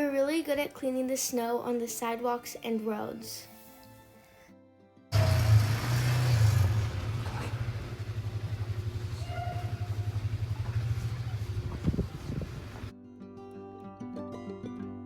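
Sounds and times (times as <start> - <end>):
engine pulsing rumble: 5.2 - 12.9.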